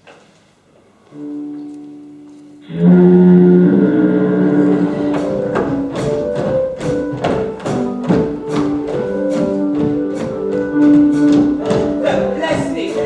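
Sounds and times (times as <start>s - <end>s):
instrumental music sustained notes: 1.0s - 13.0s
steady percussion beat: 4.6s - 13.0s.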